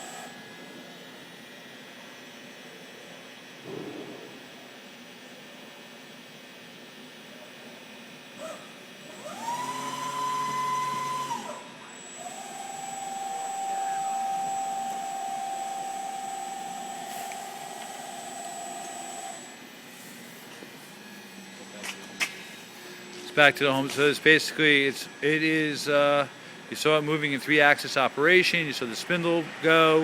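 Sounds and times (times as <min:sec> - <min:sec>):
milling machine motors whining: 0:00.0 - 0:01.7, 0:08.2 - 0:30.0.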